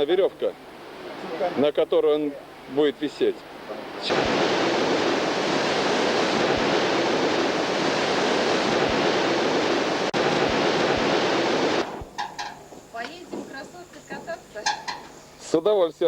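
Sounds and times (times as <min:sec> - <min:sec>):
waterfall rushing: 0:02.5 - 0:12.9.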